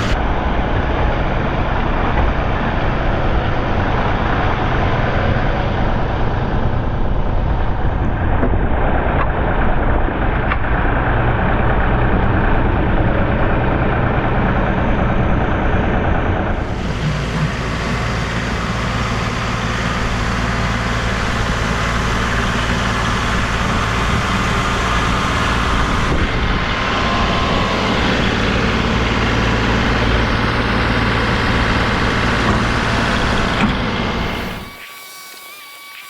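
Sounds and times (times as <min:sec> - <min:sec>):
diesel tractor engine running: 0:00.0 - 0:34.7.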